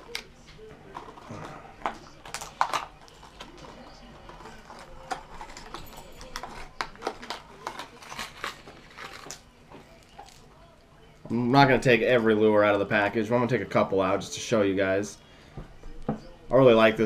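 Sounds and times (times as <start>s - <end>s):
plastic package crinkling: 0.9s - 10.5s.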